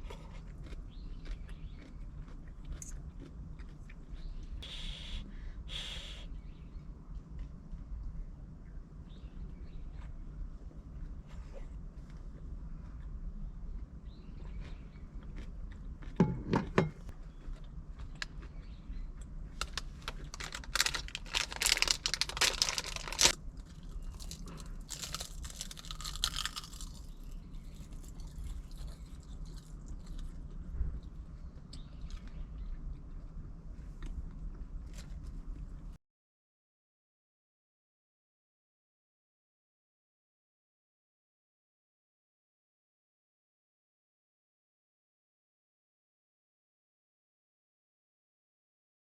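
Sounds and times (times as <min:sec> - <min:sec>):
steady low hum: 0:00.0 - 0:36.0
crackling crunching handling noise: 0:14.4 - 0:35.9.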